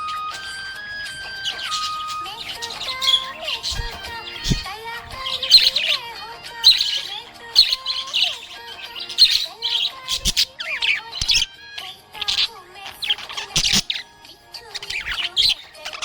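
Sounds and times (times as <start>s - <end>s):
budgerigar chirping: 0.0s - 16.0s.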